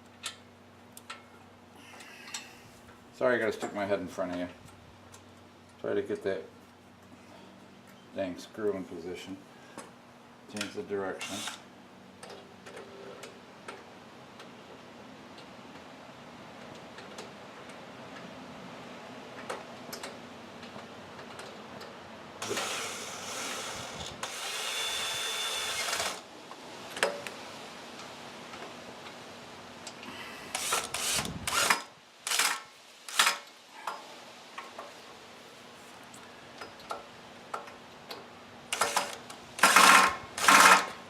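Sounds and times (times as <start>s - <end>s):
cordless drill driving screws: 11.2s - 11.6s, 22.4s - 26.2s, 30.5s - 33.4s, 38.8s - 41.0s.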